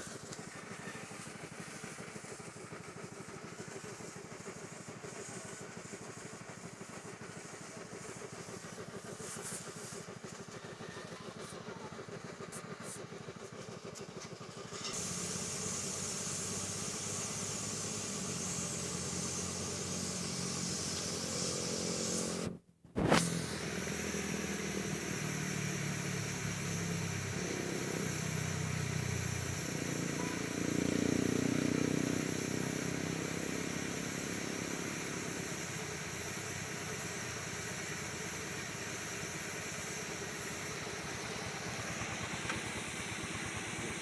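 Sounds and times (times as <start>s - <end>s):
small motor running: 0.0s - 44.0s
strong hiss: 15.0s - 44.0s.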